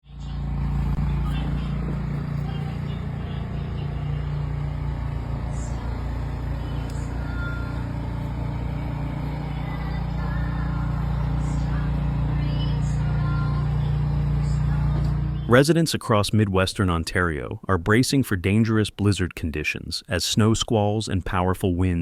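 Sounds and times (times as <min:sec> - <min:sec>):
low engine rumble: 0:00.0 - 0:15.6.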